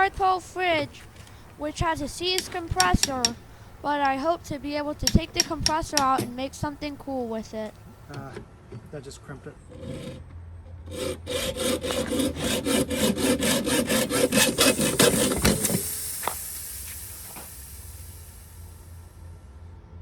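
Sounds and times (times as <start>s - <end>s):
faint high hiss of gas: 0.0s - 8.2s, 14.2s - 19.7s
hand tool rasping copper pipe: 2.2s - 3.7s, 9.6s - 17.9s.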